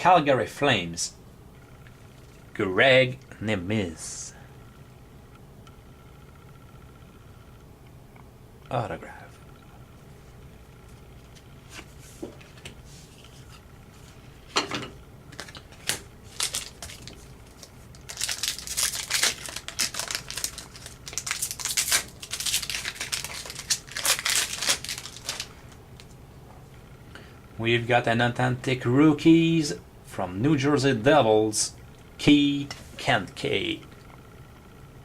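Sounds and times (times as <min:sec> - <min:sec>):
plastic wrapper crinkling and tearing: 0:15.3 - 0:25.7.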